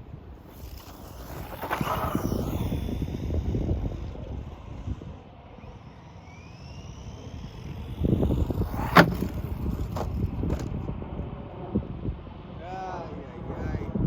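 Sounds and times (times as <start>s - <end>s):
electric motor whining: 0.3s - 10.9s
toy truck landing impact: 8.2s - 10.8s.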